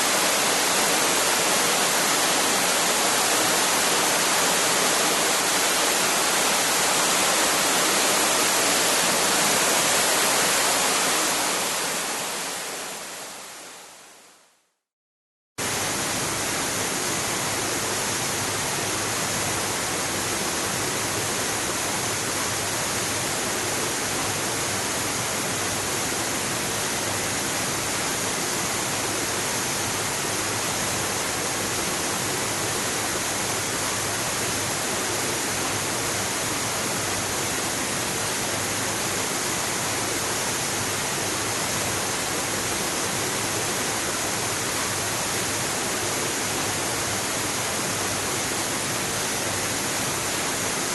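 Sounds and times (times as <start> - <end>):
waterfall rushing: 0.0 - 13.8.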